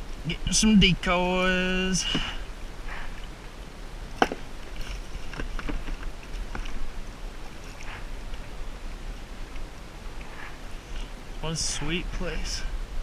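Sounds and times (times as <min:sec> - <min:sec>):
rustling: 0:04.1 - 0:08.6.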